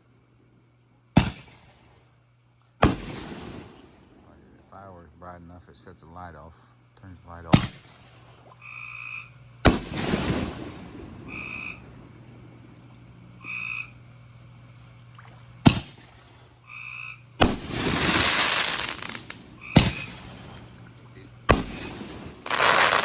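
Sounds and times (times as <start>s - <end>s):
fireworks banging: 9.7s - 11.3s, 17.4s - 20.6s, 21.5s - 23.0s
fireworks crackling: 17.4s - 23.0s.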